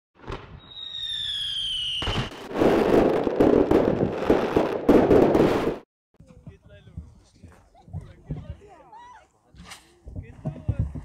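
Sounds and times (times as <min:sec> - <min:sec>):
falling firework whistle: 0:00.3 - 0:02.5.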